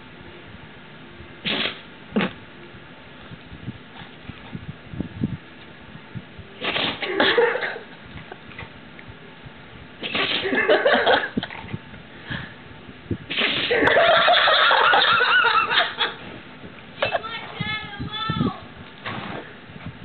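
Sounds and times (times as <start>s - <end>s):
dog sneezing: 1.4s - 2.4s, 6.6s - 7.9s, 10.0s - 10.8s, 13.3s - 13.9s
people laughing: 13.7s - 16.2s.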